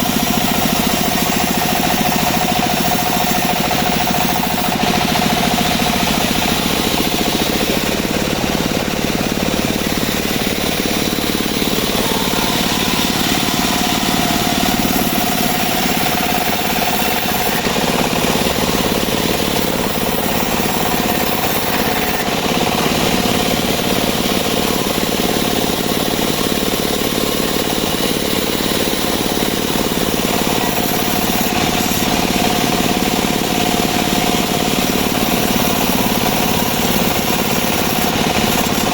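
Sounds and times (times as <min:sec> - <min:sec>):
high whine: 0:00.0 - 0:22.6
sawmill engine running: 0:00.0 - 0:38.9.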